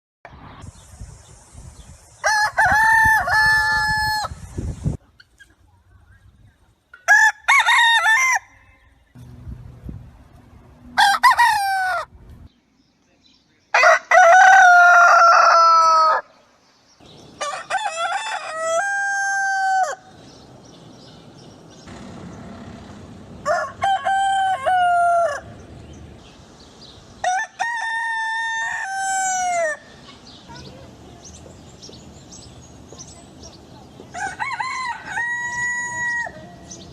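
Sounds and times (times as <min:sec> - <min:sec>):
rooster crowing: 0:02.2 - 0:04.4, 0:07.1 - 0:08.8, 0:11.0 - 0:12.1, 0:13.8 - 0:16.3, 0:17.4 - 0:20.1, 0:23.4 - 0:25.6, 0:27.2 - 0:29.9, 0:34.1 - 0:36.8.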